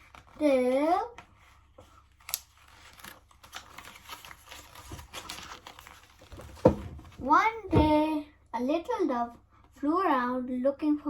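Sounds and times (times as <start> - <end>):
book pages rustling: 0.0 - 8.0.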